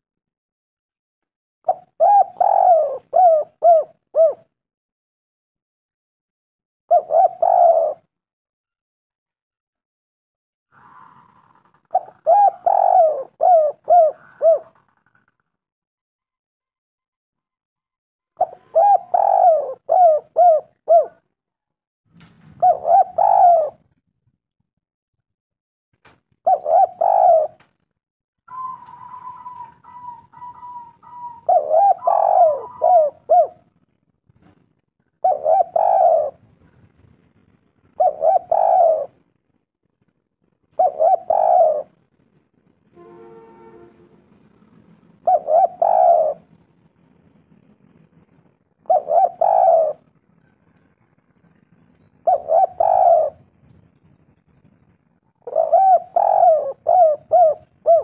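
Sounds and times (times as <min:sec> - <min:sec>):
dove cooing: 0:01.7 - 0:04.5, 0:06.9 - 0:08.1, 0:10.7 - 0:15.4, 0:18.4 - 0:21.2, 0:22.6 - 0:23.9, 0:26.4 - 0:27.7, 0:28.5 - 0:33.8, 0:35.1 - 0:36.6, 0:37.9 - 0:39.2, 0:40.7 - 0:42.0, 0:45.0 - 0:46.6, 0:48.8 - 0:50.1, 0:52.2 - 0:53.6, 0:55.3 - 0:58.0.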